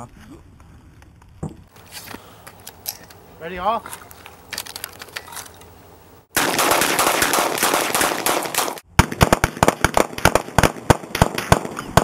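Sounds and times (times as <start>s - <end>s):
rapid gunfire: 6.4s - 12.0s.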